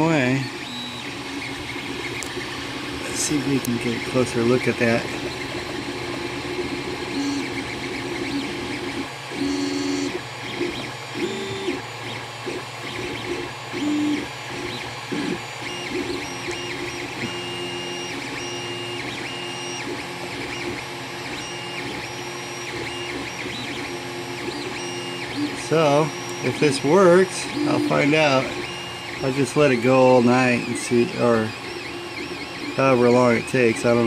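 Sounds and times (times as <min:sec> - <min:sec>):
steady hum: 0:00.0 - 0:34.0
stepper motors singing tones: 0:13.4 - 0:34.0.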